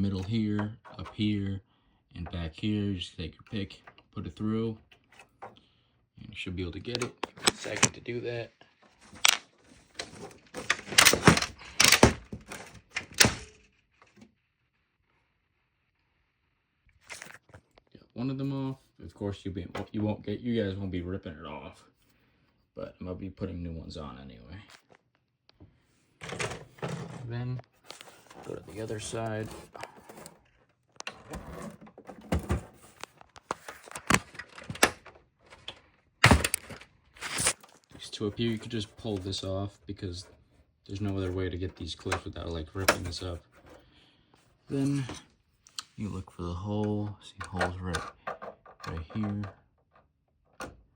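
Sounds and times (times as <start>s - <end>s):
hard plastic clicking and scraping: 6.9s - 8.0s, 8.7s - 14.3s, 26.2s - 43.8s
loud plastic clunk: 36.2s - 37.5s
metal pick prying plastic case: 36.2s - 37.6s.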